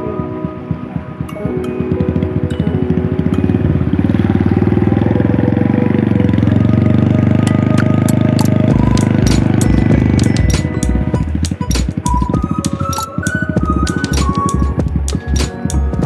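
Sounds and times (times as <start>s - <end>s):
engine running: 3.3s - 12.3s
low thuds: 8.4s - 16.0s.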